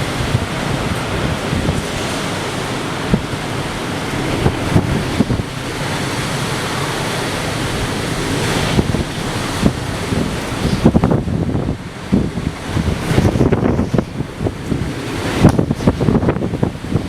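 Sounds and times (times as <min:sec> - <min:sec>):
strong wind blowing: 0:00.0 - 0:17.0
wind buffeting microphone: 0:00.0 - 0:17.0.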